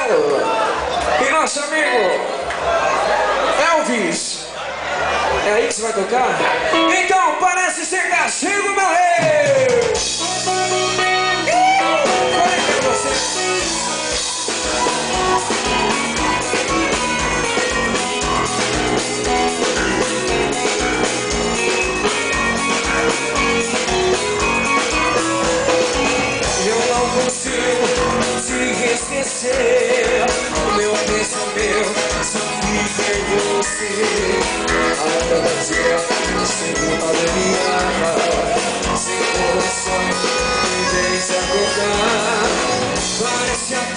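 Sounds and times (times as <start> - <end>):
live band playing dance music: 0.0 - 43.9
steady drum beat: 9.2 - 43.9.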